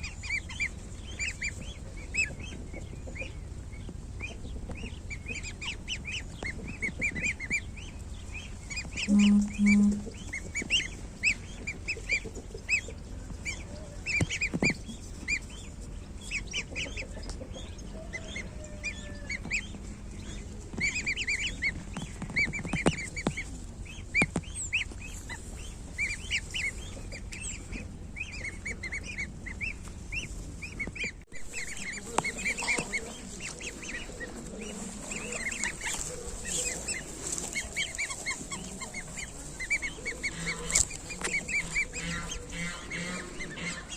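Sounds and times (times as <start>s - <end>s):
goslings peeping: 0.0s - 43.9s
low honking: 7.4s - 11.7s, 31.3s - 43.9s.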